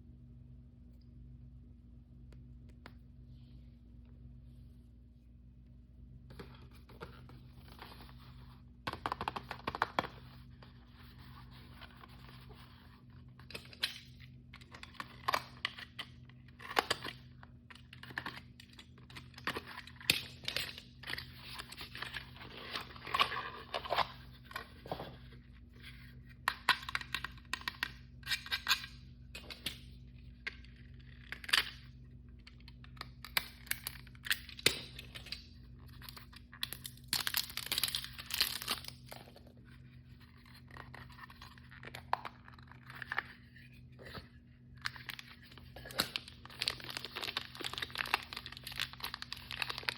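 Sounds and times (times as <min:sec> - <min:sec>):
steady low hum: 0:00.0 - 0:49.9
plastic packaging crinkling and tearing: 0:33.2 - 0:39.5, 0:44.8 - 0:49.9.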